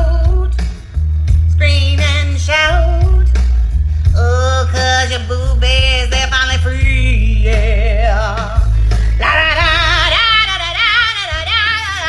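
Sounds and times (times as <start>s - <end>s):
steady bass line: 0.0s - 12.0s
singer with strong vibrato: 1.5s - 12.0s.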